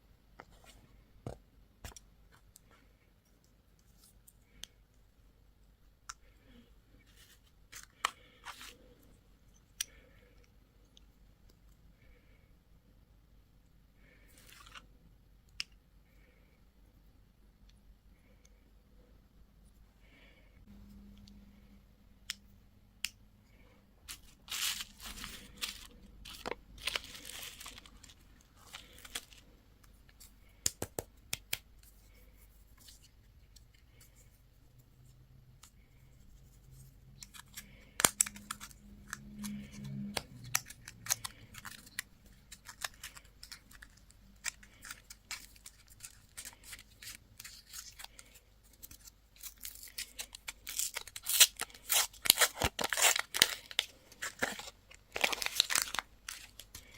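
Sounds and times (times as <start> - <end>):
plastic wrappers ripped and rustled: 24.1 - 29.4, 37.2 - 56.9.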